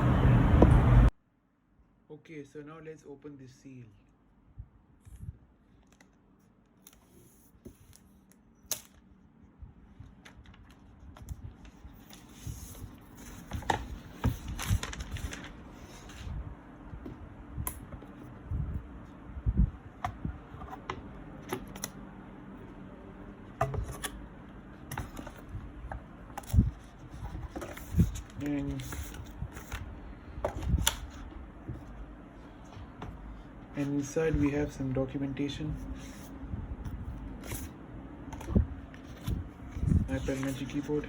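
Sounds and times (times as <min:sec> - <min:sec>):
packaging rustling: 0:10.2 - 0:16.3.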